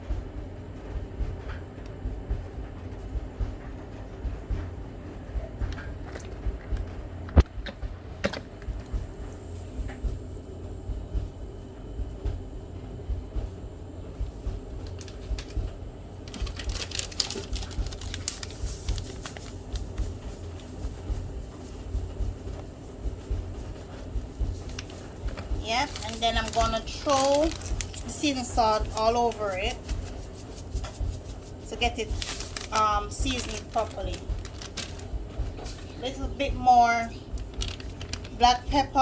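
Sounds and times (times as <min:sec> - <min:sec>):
seasoning shaker rattling: 0:16.2 - 0:20.7, 0:24.6 - 0:35.9, 0:37.2 - 0:38.4.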